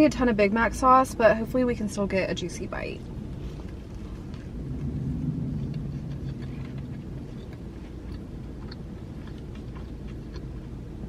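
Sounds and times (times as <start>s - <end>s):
person chewing food: 3.2s - 11.0s.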